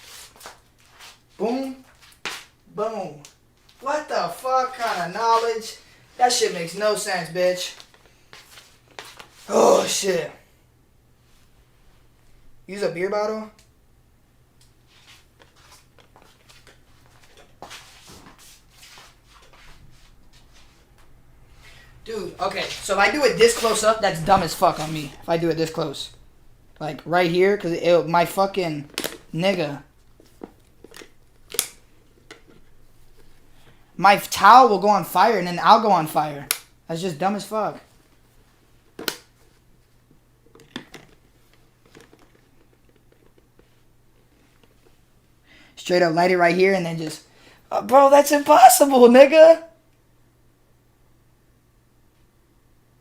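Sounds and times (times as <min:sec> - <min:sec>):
low steady hum: 0:00.0 - 0:47.9
handling clicks and rustles: 0:38.8 - 0:45.0.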